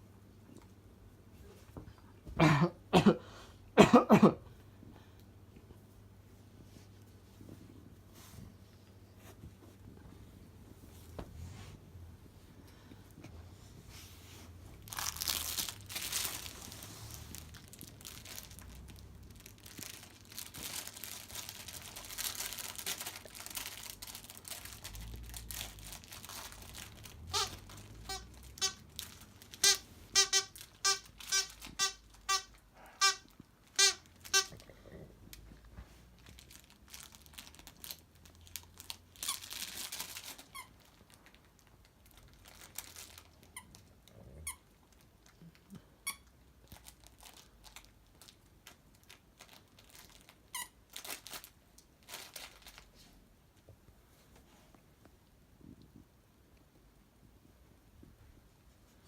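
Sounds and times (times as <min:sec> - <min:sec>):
rustling and crinkling: 0:05.6 - 0:56.7
squeaky toy squeaking: 0:27.3 - 0:28.8, 0:29.5 - 0:34.5.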